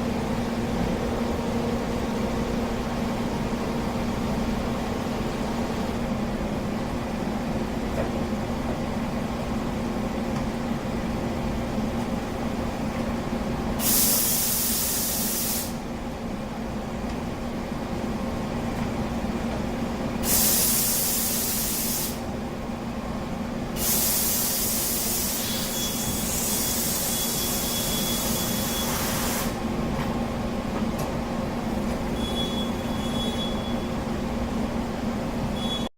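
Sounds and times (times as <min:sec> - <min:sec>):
machine low hum: 0:00.0 - 0:08.8
loud hissing bursts: 0:13.8 - 0:15.8, 0:20.2 - 0:22.2, 0:23.8 - 0:29.6.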